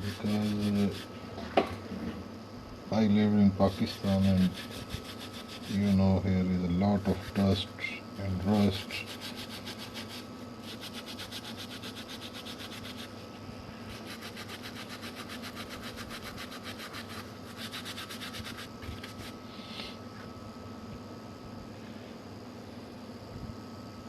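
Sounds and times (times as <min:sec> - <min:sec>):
brush scrubbing circuit board: 0:00.0 - 0:01.1, 0:03.6 - 0:06.0, 0:07.0 - 0:07.6, 0:08.5 - 0:13.2, 0:13.9 - 0:19.4
faint steady hum: 0:00.0 - 0:24.0.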